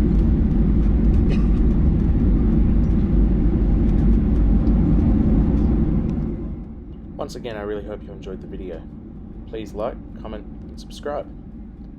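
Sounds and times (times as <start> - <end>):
airplane cabin rumble: 0.0 - 11.9.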